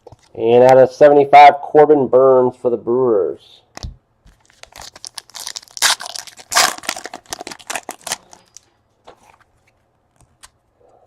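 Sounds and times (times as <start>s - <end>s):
plastic wrapper tearing and crinkling: 4.4s - 8.7s.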